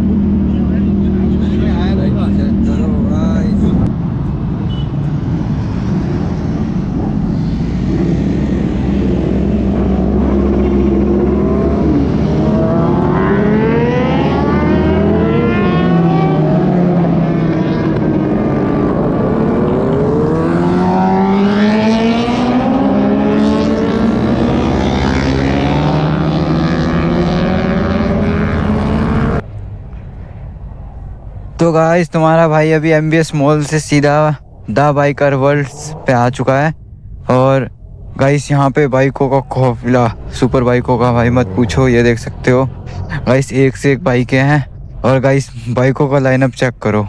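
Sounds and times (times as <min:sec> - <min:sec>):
motorcycle engines revving: 0:00.0 - 0:47.0.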